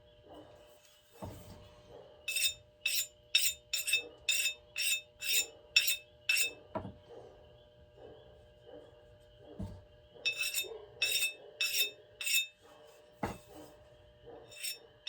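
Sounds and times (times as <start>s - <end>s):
sharpening stone scraping axe: 2.3s - 6.6s, 10.3s - 12.5s, 14.5s - 14.8s
dull knock: 13.2s - 13.4s.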